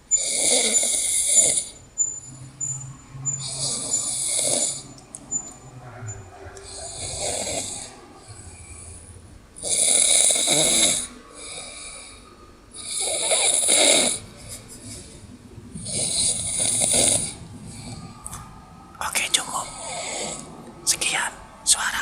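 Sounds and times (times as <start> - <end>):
person snoring loudly: 12.8 - 14.2.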